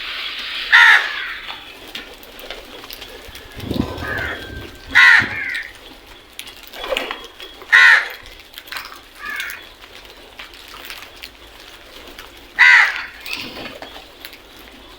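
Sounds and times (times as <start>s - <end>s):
crows cawing: 0.7s - 1.8s, 3.3s - 5.8s, 7.7s - 8.3s, 9.2s - 9.7s, 12.6s - 13.3s.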